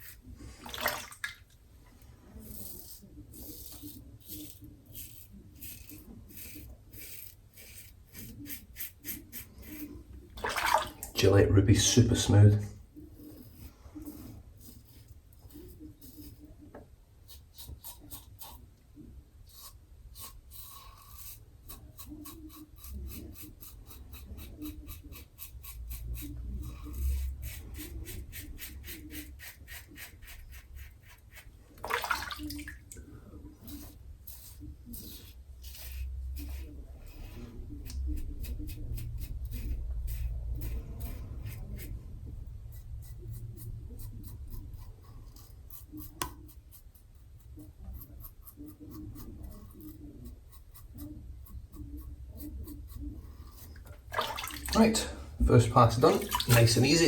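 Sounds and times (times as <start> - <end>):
razor scraping stubble: 2.4 - 10.1, 19.5 - 31.8, 33.5 - 54.0.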